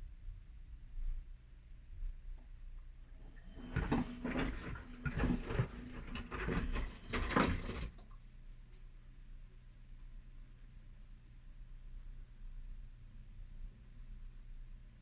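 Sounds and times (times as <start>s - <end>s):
washing machine motor humming: 3.2s - 8.0s
water and laundry sloshing: 3.3s - 8.0s.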